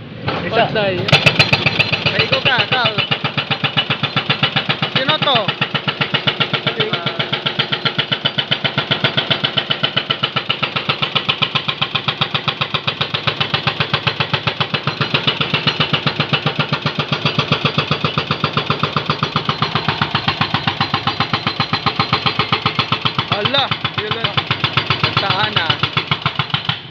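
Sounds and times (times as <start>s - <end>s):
hydraulic breaker hammering pavement: 0.2s - 26.9s.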